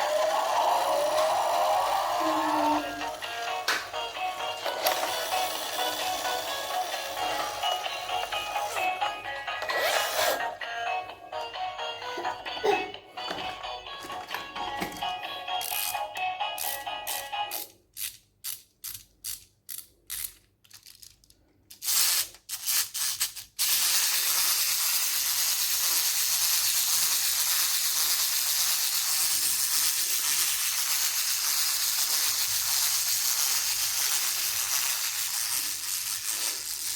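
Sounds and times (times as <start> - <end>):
ratcheting mechanical clicks: 15.6 - 25.6.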